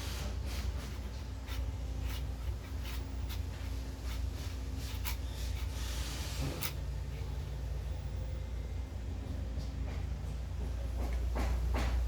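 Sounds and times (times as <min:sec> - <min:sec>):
scraping and rubbing strokes: 0:00.0 - 0:06.8
steady low hum: 0:00.0 - 0:12.0.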